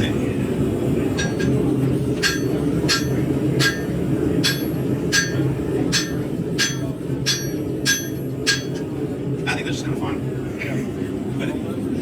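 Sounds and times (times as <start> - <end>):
hammer striking steel on anvil: 1.2 - 8.9.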